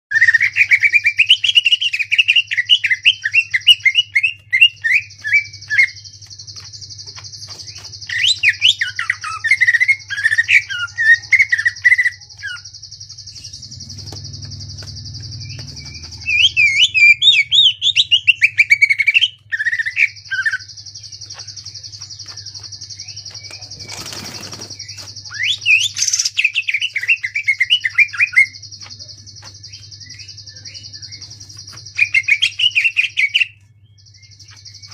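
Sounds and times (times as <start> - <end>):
bird chattering song: 0.1 - 34.9
low hum: 12.7 - 18.4.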